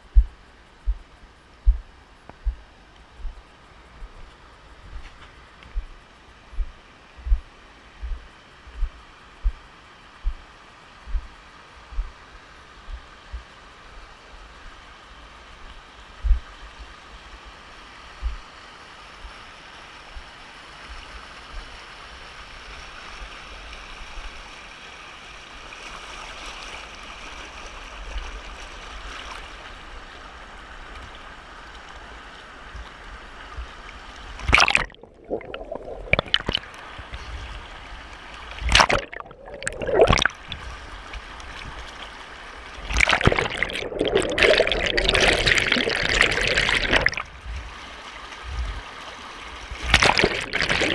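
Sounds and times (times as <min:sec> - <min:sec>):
loud water splashes: 0:34.4 - 0:37.3, 0:38.4 - 0:40.9, 0:42.6 - 0:48.9, 0:49.6 - 0:50.9.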